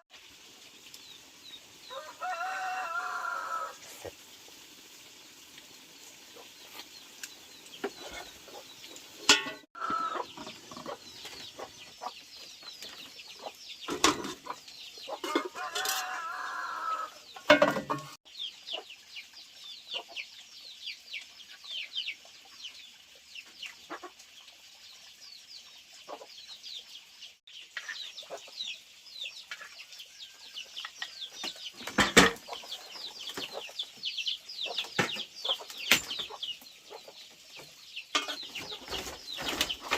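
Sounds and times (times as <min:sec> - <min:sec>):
chickens clucking: 0:05.7 - 0:20.5, 0:21.1 - 0:24.6, 0:26.0 - 0:26.5, 0:27.6 - 0:39.9.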